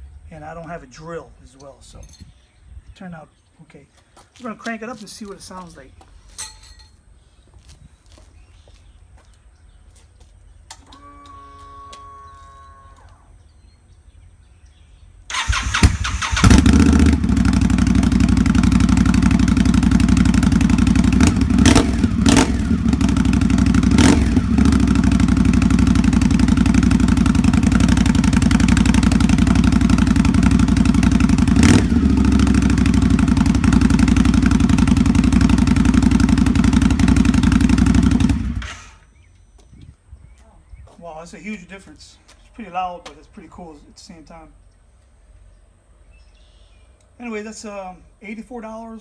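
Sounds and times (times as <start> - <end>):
starter cranking: 15.3 - 17.6
engine throttle blips: 15.3 - 39.0
motorcycle engine idling: 15.3 - 39.0.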